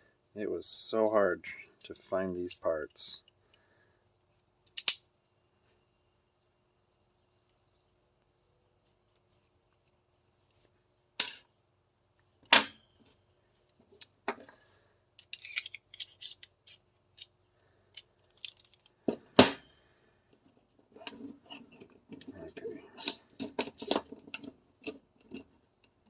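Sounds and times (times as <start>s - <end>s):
pistol parts clicking and clacking: 4.3s - 5.0s, 15.2s - 19.7s, 23.0s - 26.0s.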